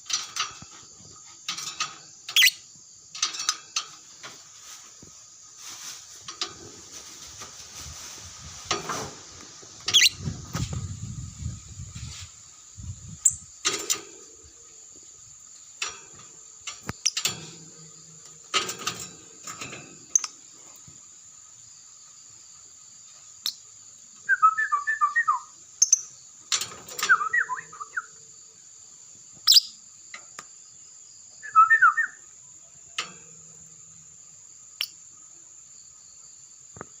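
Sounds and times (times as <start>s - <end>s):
lovebird chirping: 2.3s - 2.7s, 9.8s - 10.2s, 13.1s - 13.5s, 23.4s - 23.6s, 24.2s - 26.1s, 27.1s - 28.2s, 29.4s - 29.8s.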